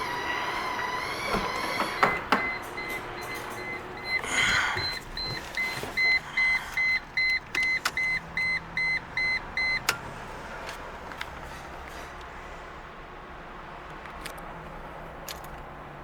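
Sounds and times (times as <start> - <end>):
car warning chime beeping rapidly: 2.0 - 10.0
clicks: 4.8 - 8.2.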